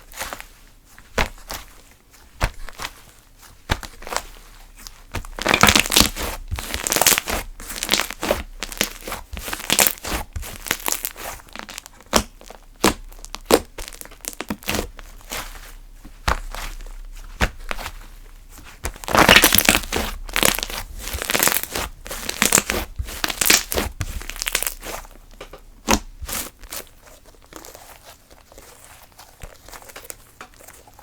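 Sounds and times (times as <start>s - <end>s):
slime squeezed with sticky crackles: 0.0s - 31.0s.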